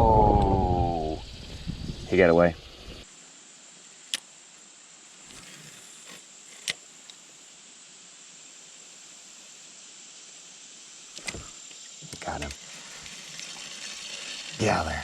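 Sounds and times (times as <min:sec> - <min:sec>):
high-pitched insect chirring: 0:09.1 - 0:15.0.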